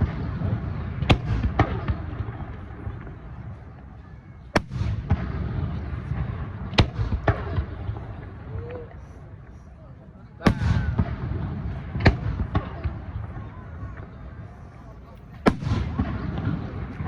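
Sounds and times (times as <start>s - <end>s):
rolling rumble of echo: 0.0s - 4.0s
fireworks bangs: 0.0s - 9.6s, 10.4s - 17.0s.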